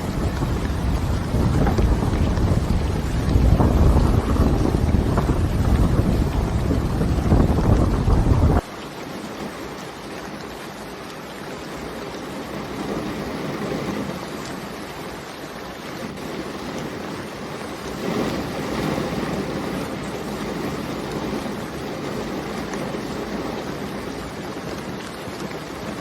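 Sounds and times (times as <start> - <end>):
deep rumble: 0.0 - 8.6
steady rain hiss: 0.0 - 26.0.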